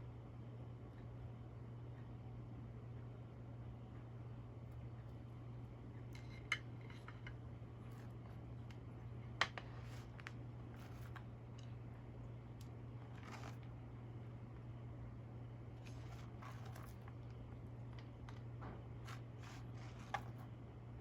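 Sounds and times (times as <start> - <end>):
steady low hum: 0.0 - 21.0
hands handling kitchen items: 17.9 - 20.5.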